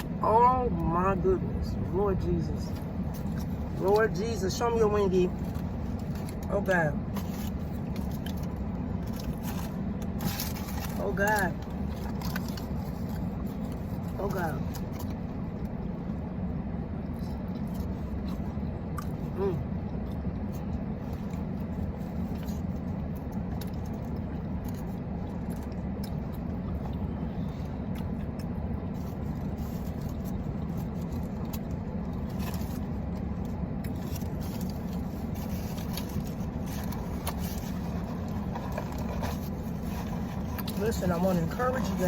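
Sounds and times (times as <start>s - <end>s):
car engine idling: 0.0s - 42.0s
faint clicks and rustles: 19.9s - 42.0s.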